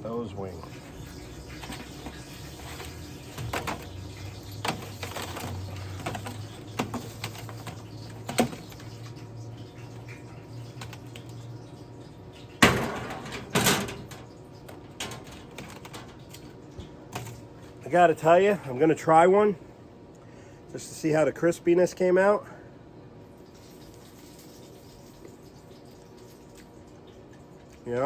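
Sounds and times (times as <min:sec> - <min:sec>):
metal clatters: 0:12.6 - 0:14.3.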